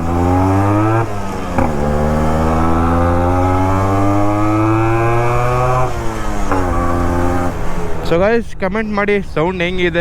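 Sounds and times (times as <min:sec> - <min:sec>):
motorcycle accelerating: 0:00.0 - 0:08.4.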